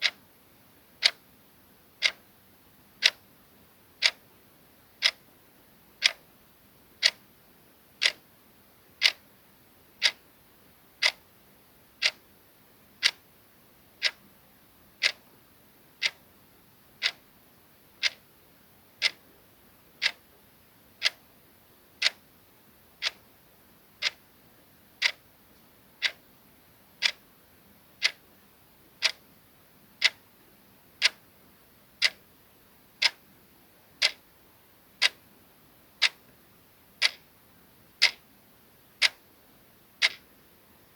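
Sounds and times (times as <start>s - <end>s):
clock ticking: 1.0s - 1.2s, 2.0s - 2.2s, 3.0s - 3.2s, 4.0s - 4.2s, 5.0s - 5.2s, 6.0s - 6.2s, 7.0s - 7.2s, 8.0s - 8.2s, 9.0s - 9.2s, 10.0s - 10.2s, 11.0s - 11.2s, 12.0s - 12.2s, 13.0s - 13.2s, 14.0s - 14.2s, 15.0s - 15.2s, 16.0s - 16.2s, 17.0s - 17.2s, 18.0s - 18.2s, 19.0s - 19.2s, 20.0s - 20.2s, 21.0s - 21.2s, 22.0s - 22.2s, 23.0s - 23.2s, 24.0s - 24.2s, 25.0s - 25.2s, 26.0s - 26.2s, 27.0s - 27.2s, 28.0s - 28.2s, 29.0s - 29.2s, 30.0s - 30.2s, 31.0s - 31.2s, 32.0s - 32.2s, 33.0s - 33.2s, 34.0s - 34.2s, 35.0s - 35.2s, 36.0s - 36.2s, 37.0s - 37.2s, 38.0s - 38.2s, 39.0s - 39.2s, 40.0s - 40.2s.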